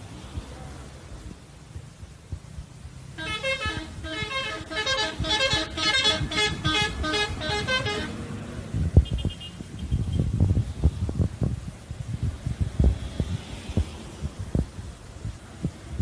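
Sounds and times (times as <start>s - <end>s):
road noise rumble: 0.0s - 16.0s
bus horn melody: 3.2s - 9.5s.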